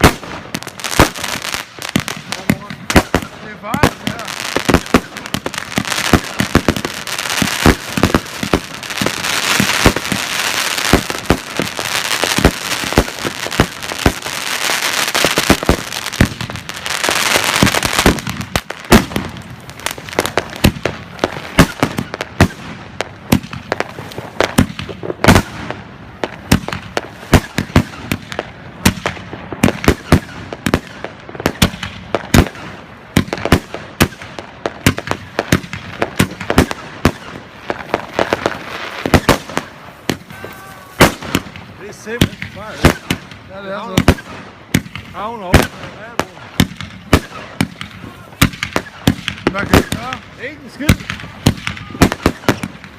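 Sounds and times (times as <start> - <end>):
firework hissing: 0.0 - 33.0
firework battery bangs and crackles: 0.0 - 52.9.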